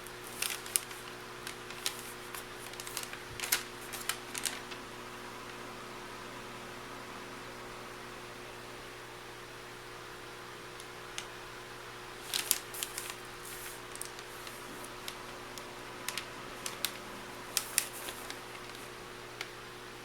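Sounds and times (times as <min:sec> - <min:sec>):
plastic packaging crinkling: 0:00.0 - 0:04.8, 0:12.1 - 0:19.6
faint hum: 0:00.0 - 0:20.0.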